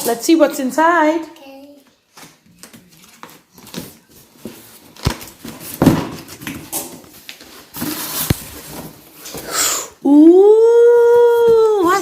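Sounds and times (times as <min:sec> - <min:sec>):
thump: 0:05.1 - 0:06.3.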